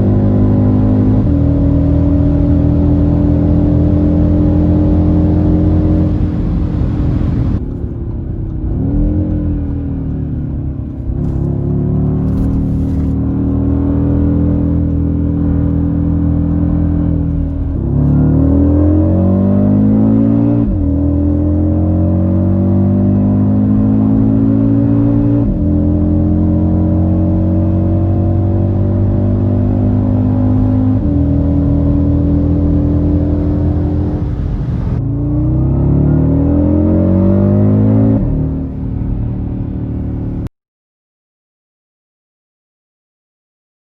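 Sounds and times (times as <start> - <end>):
car engine revving through gears: 0.0 - 40.5.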